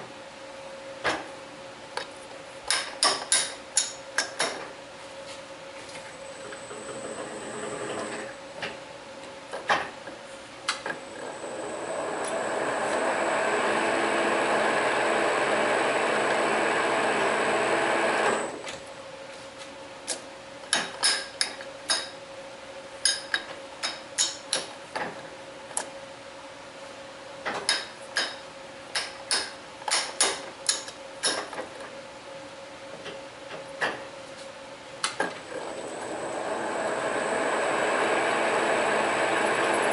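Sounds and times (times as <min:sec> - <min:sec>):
metal lathe running: 0:11.2 - 0:18.6, 0:35.5 - 0:39.9.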